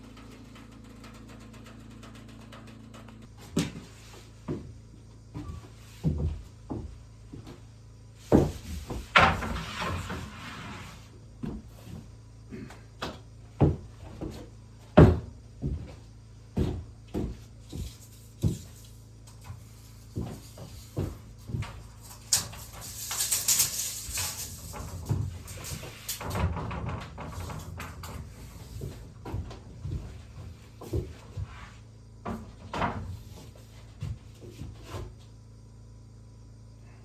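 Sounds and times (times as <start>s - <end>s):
wood knocks and thumps: 0.0s - 4.7s, 5.3s - 7.6s, 8.3s - 10.4s, 13.0s - 16.0s, 16.6s - 18.8s, 24.7s - 35.2s.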